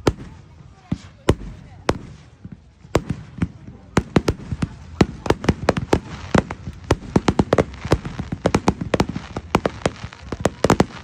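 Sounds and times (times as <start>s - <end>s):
fireworks bursting: 0.0s - 11.0s.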